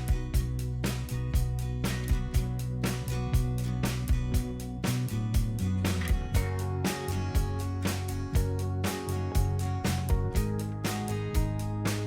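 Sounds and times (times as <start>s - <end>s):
background music with steady beat: 3.4s - 12.0s.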